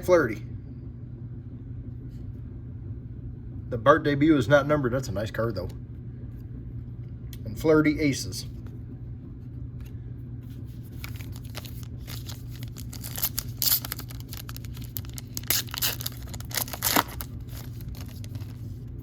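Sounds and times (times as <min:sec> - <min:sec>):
foil wrapper tearing and crinkling: 0:10.9 - 0:18.8.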